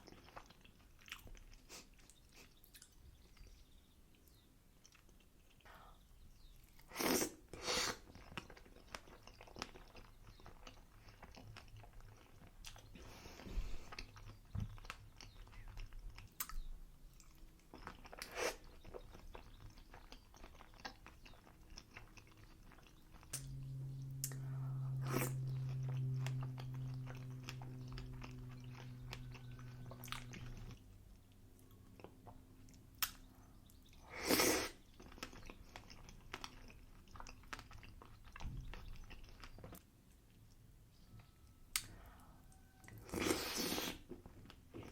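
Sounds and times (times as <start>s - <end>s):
close chewing with mouth smacks: 0.0s - 44.9s
steady low hum: 22.6s - 31.8s.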